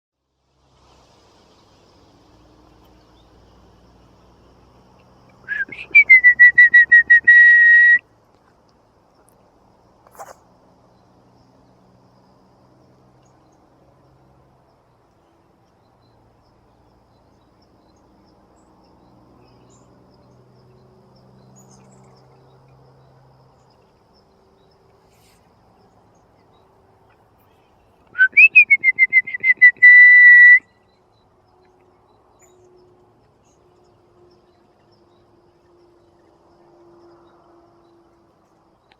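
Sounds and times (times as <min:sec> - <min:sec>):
loud whistled call: 0:05.4 - 0:08.0, 0:28.2 - 0:30.7.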